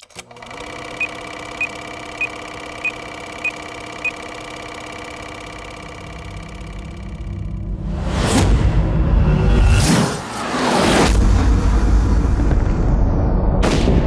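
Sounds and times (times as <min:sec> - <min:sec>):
steady droning hum: 0:00.6 - 0:07.9.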